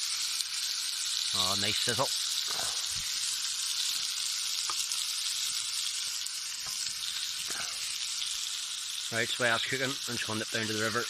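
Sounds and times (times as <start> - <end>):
steak sizzling on a griddle: 0.0 - 11.0.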